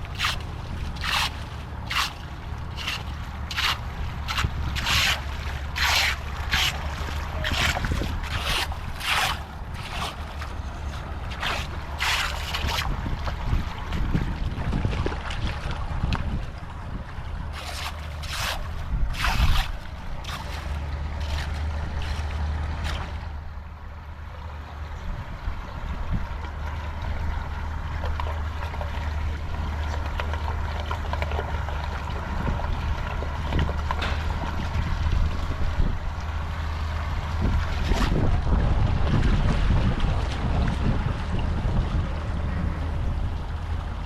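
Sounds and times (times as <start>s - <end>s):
sharp noises: 0.0s - 13.0s
wind buffeting microphone: 0.0s - 44.0s.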